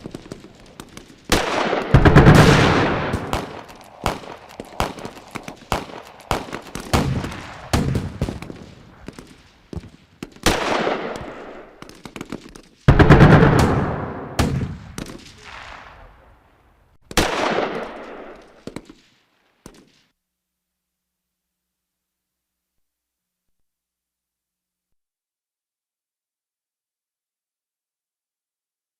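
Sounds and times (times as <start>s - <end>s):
large explosions: 0.0s - 11.6s, 12.9s - 16.4s
gunfire shots and bursts: 0.0s - 16.0s, 17.0s - 20.0s.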